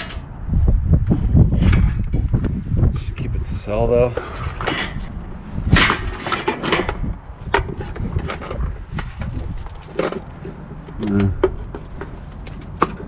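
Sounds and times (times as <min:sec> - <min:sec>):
junk knocking and scraping: 0:00.0 - 0:03.1, 0:03.9 - 0:13.0.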